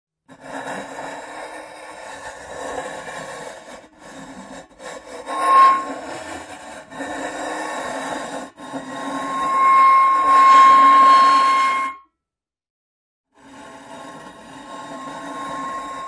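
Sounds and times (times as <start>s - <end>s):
loud high metal squeal: 5.2s - 6.2s, 9.0s - 12.0s, 15.0s - 16.0s
sheet metal scraping: 5.2s - 6.4s, 9.2s - 12.0s.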